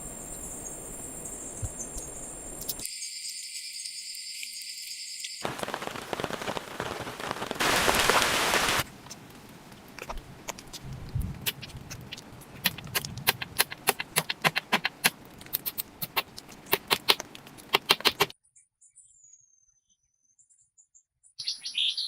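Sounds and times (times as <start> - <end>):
insects chirping: 0.0 - 8.8
water dripping: 1.5 - 18.3
rain pattering: 5.4 - 14.2.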